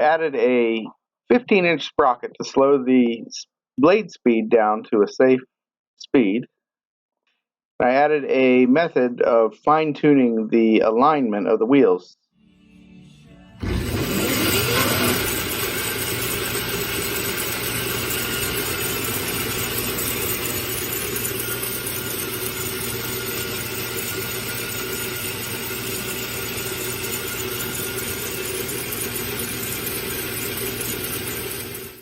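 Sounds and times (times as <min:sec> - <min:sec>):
bandsaw running: 0:13.6 - 0:32.0.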